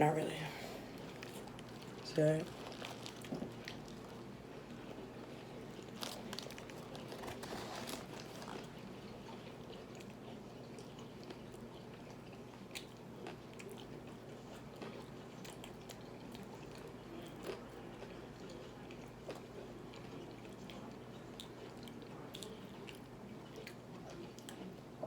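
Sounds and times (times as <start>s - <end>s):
person chewing food: 0.7s - 25.0s.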